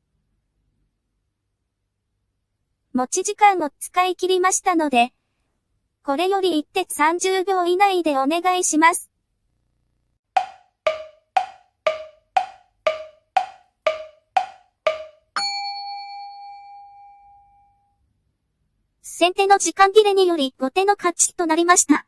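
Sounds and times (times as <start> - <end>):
wooden timer ticks: 10.4 - 15.3
ringing bell tone: 14.9 - 18.0.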